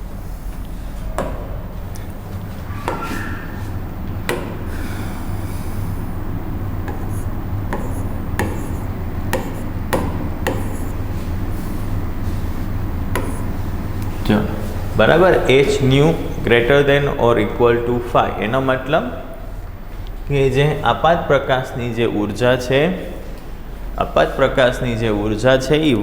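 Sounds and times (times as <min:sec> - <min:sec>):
scratching writing strokes: 0:05.7 - 0:16.2
taps on a board: 0:06.8 - 0:10.8.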